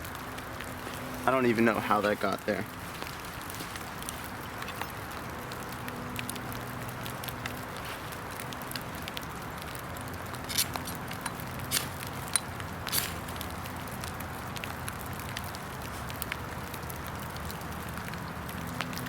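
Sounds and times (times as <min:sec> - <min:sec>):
rain hissing in woods: 0:00.0 - 0:19.0
sharp clicks or scrapes: 0:10.4 - 0:13.4.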